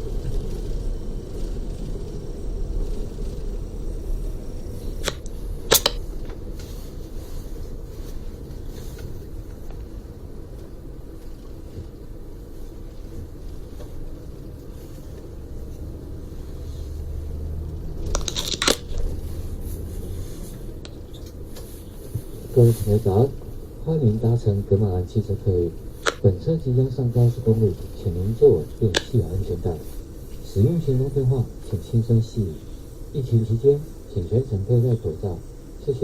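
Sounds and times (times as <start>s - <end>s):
bus engine and tyres rumbling: 0.0s - 32.8s
sharp clicks: 5.0s - 6.0s, 26.0s - 26.2s.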